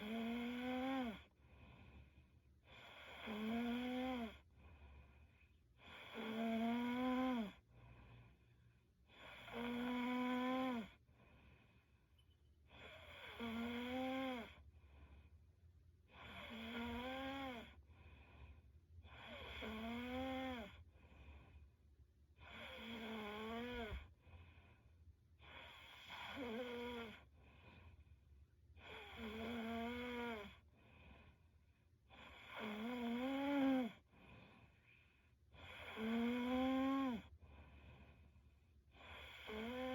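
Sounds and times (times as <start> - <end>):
woman snoring: 0.0 - 1.3, 2.7 - 4.5, 5.8 - 7.7, 9.1 - 11.0, 12.7 - 14.6, 16.1 - 17.8, 19.1 - 20.9, 22.4 - 24.1, 25.4 - 27.3, 28.8 - 30.7, 32.1 - 34.1, 35.6 - 37.3, 39.0 - 39.9
quiet breathing: 0.0 - 39.9.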